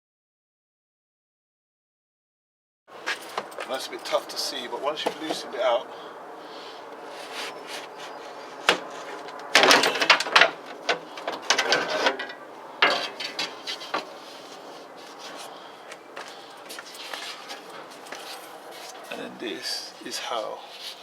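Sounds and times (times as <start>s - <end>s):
glass scraping and rattling: 7.2s - 15.6s, 16.3s - 19.3s.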